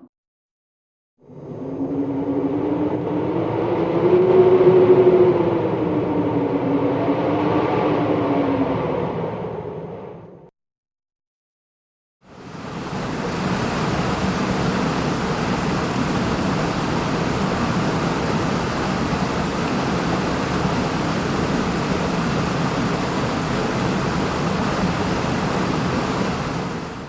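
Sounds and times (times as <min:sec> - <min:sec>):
wind rushing: 0:01.2 - 0:10.5.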